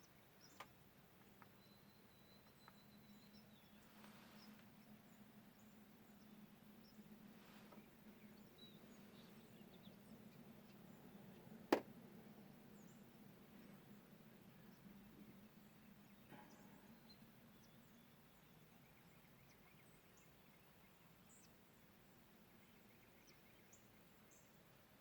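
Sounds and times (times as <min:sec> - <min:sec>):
low steady hum: 0:00.0 - 0:24.9
faint bird chirps: 0:01.3 - 0:11.4.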